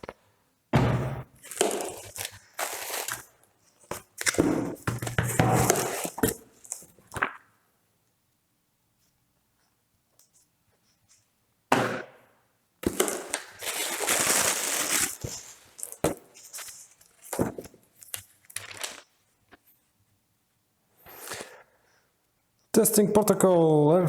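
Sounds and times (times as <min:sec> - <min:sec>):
paper rustling and crinkling: 0:01.4 - 0:06.9, 0:12.8 - 0:19.8.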